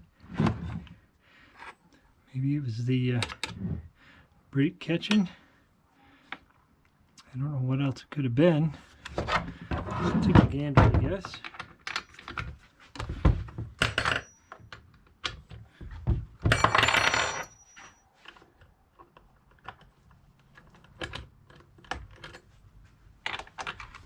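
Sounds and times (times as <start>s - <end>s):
tools clicking and knocking on workbench: 9.0s - 22.5s.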